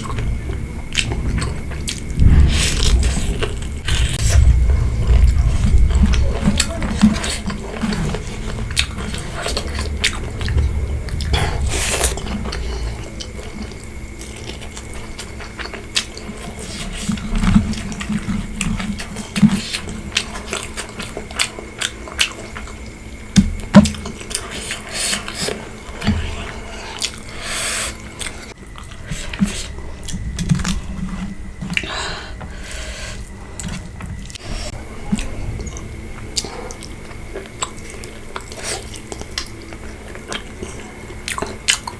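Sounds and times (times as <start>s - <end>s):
chewing and biting: 35.1s - 41.9s.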